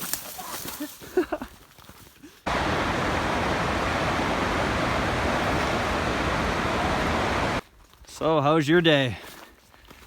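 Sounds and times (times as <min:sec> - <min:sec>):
waterfall roaring: 0:02.5 - 0:07.6.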